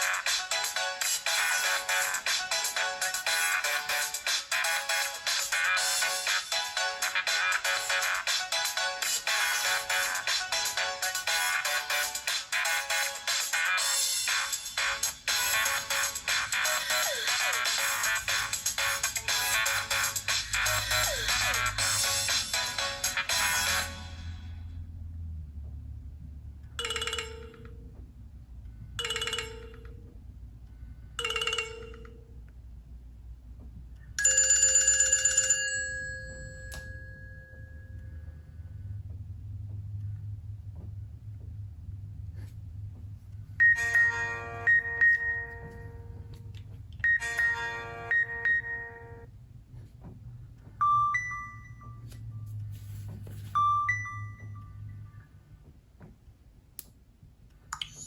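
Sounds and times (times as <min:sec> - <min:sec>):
electronic phone ringtone: 0:15.0 - 0:23.8, 0:26.8 - 0:27.9, 0:29.0 - 0:30.0, 0:31.1 - 0:32.4, 0:34.2 - 0:38.2, 0:43.6 - 0:46.2, 0:47.0 - 0:49.3, 0:53.5 - 0:55.0.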